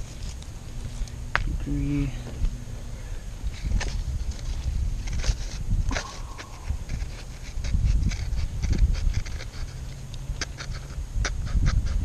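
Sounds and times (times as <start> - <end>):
low rumble: 2.4 - 8.1
bark and sticks cracking: 3.4 - 11.4.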